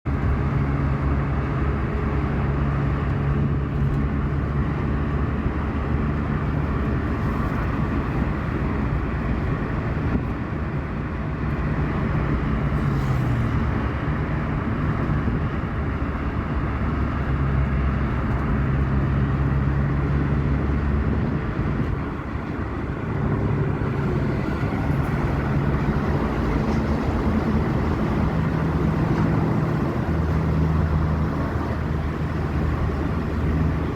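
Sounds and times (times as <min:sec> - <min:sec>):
vehicle rumble: 0:00.0 - 0:33.9
deep drone: 0:19.7 - 0:33.9.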